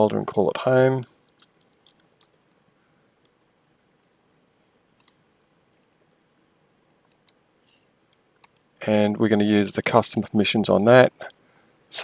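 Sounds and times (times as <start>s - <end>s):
faint mouse and keyboard clicks: 1.2s - 4.4s, 5.0s - 6.2s, 6.9s - 7.4s, 8.1s - 8.8s.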